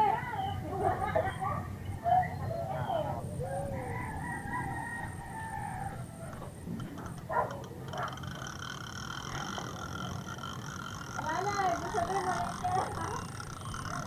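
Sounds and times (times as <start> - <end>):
rooster crowing: 3.0 - 6.4.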